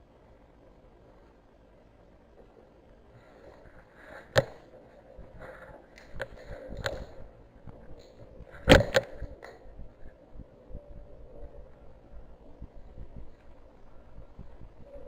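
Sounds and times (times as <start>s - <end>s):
sharp cracks and knocks: 4.2s - 4.7s, 5.9s - 7.2s, 8.0s - 9.6s.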